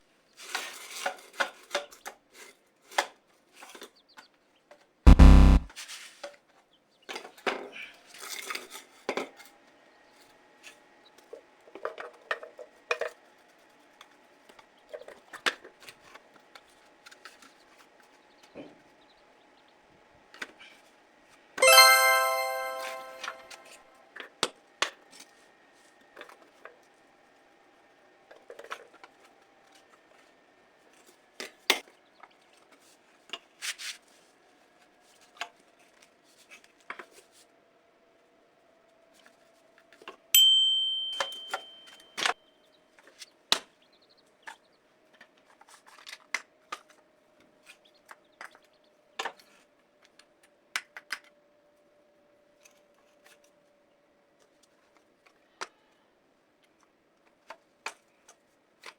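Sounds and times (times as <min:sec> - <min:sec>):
sharp ringing clink: 0:40.4 - 0:42.0.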